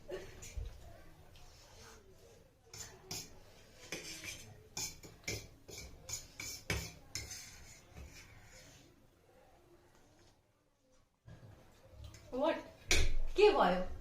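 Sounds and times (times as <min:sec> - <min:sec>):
cutlery clinking against dishes: 0:02.7 - 0:07.5.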